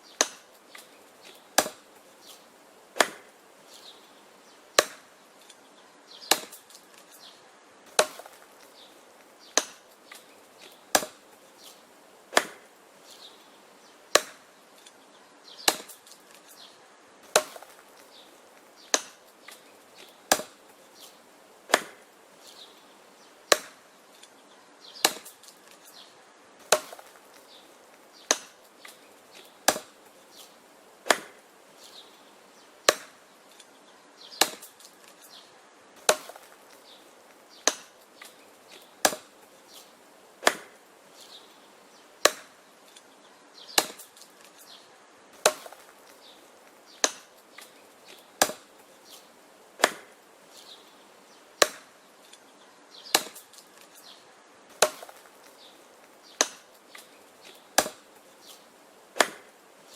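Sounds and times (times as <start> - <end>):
axe chopping wood: 0.1 - 1.9, 3.0 - 3.3, 4.8 - 5.1, 6.2 - 7.1, 7.9 - 8.7, 9.4 - 11.3, 12.3 - 12.7, 14.1 - 14.5, 15.6 - 16.5, 17.2 - 22.1, 23.5 - 24.2, 25.0 - 26.0, 26.6 - 31.4, 32.8 - 33.6, 34.3 - 35.3, 36.0 - 39.6, 40.4 - 40.8, 42.2 - 43.0, 43.7 - 44.6, 45.4 - 48.8, 49.8 - 50.2, 51.6 - 51.9, 53.1 - 53.9, 54.7 - 55.6, 56.3 - 59.6.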